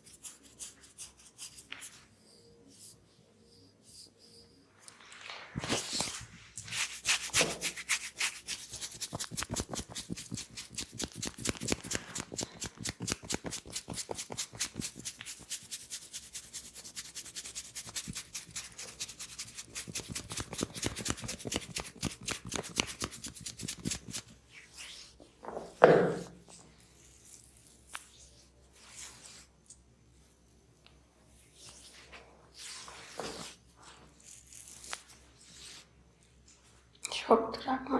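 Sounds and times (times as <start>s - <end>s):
hands rubbing over head: 5.2s - 25.0s.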